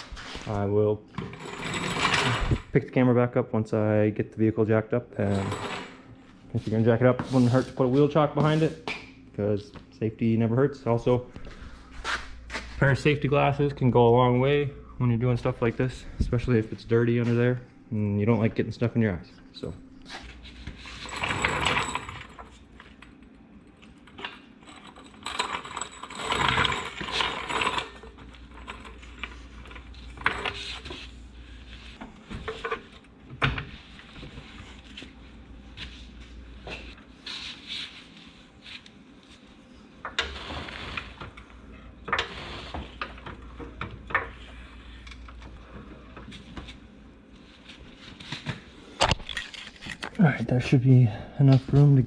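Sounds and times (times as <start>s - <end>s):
car jack ratcheting and clanking: 1.2s - 2.8s, 20.8s - 22.7s, 24.1s - 31.1s.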